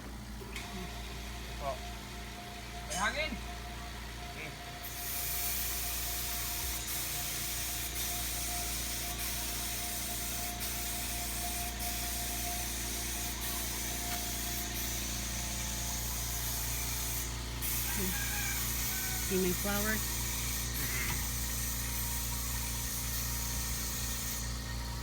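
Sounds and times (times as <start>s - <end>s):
spray hissing: 5.0s - 24.5s
paint sprayer motor humming: 5.0s - 25.0s.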